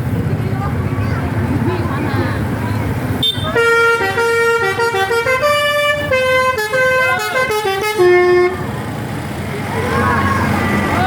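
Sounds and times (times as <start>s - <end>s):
musical bus horn playing a tune: 3.2s - 8.6s.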